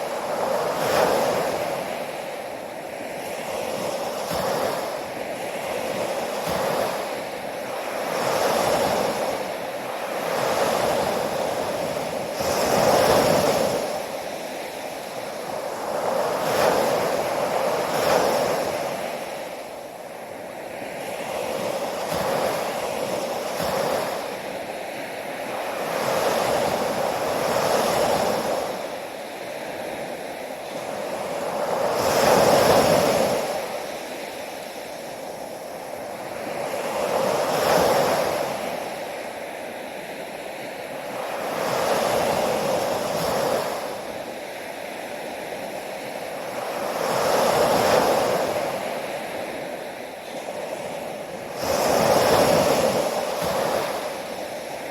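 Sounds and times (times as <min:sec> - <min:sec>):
ocean waves breaking on shore: 0:00.0 - 0:54.9.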